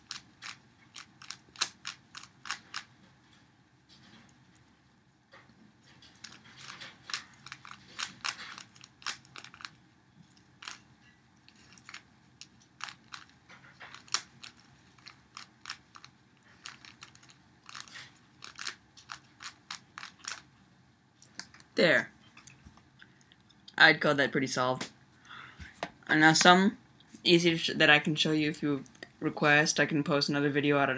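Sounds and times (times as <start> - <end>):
puzzle cube layers clicking: 0.0 - 2.9, 6.1 - 10.9, 11.5 - 20.4.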